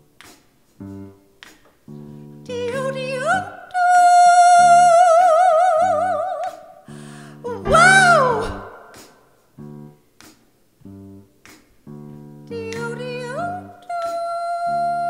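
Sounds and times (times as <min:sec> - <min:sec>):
woman singing wordless note: 0:07.4 - 0:09.0.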